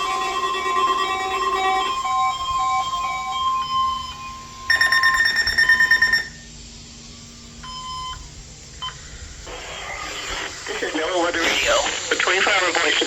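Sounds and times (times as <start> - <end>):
harsh pulsing buzzer: 0.0 - 6.6
steady high alarm tone: 0.0 - 6.6, 7.6 - 8.3.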